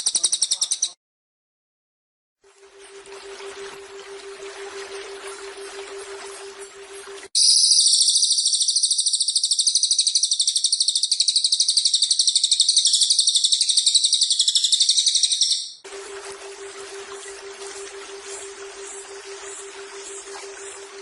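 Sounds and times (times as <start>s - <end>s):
high-pitched bird trill: 7.4s - 15.8s.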